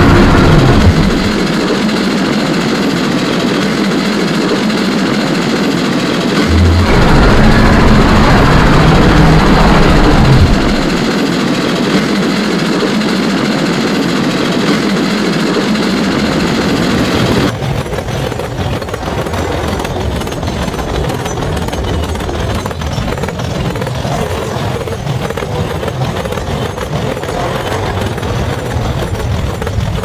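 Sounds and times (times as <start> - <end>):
low hum: 0.0 - 30.0
rumbling train noise: 0.0 - 30.0
low tone: 6.4 - 11.2.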